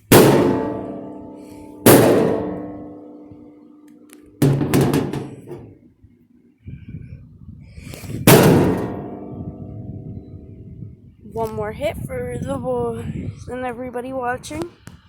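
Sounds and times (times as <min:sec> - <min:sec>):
sledgehammer striking sheet metal: 0:00.0 - 0:05.8, 0:08.2 - 0:10.6.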